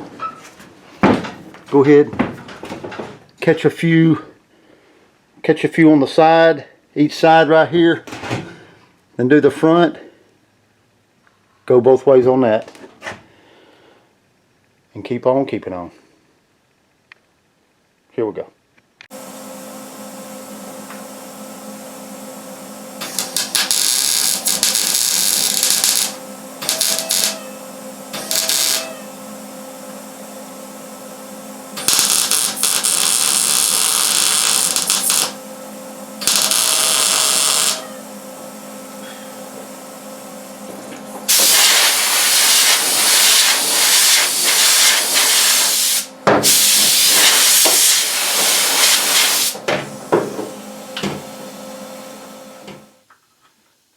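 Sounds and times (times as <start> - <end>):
steady hum: 19.1 - 53.1
arc welding crackling hiss: 23.0 - 29.2, 31.7 - 35.4, 36.2 - 37.9, 41.3 - 49.6.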